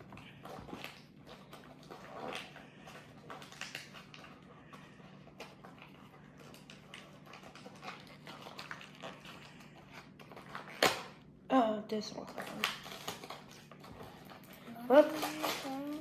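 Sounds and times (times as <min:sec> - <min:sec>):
plastic parts clicking and rustling: 0:12.1 - 0:16.0.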